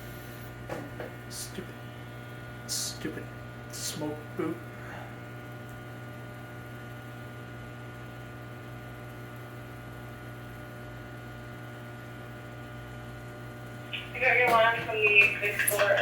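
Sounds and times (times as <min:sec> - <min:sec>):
electrical mains hum: 0:00.0 - 0:16.0.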